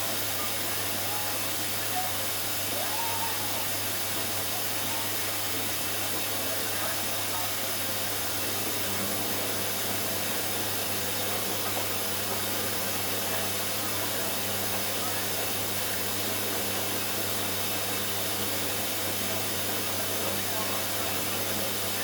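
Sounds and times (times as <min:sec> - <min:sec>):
washing machine running: 0:00.0 - 0:22.0.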